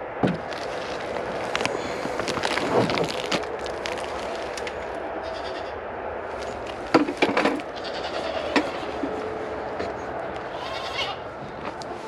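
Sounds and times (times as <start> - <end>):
goats bleating: 4.2 - 5.8, 6.4 - 11.8.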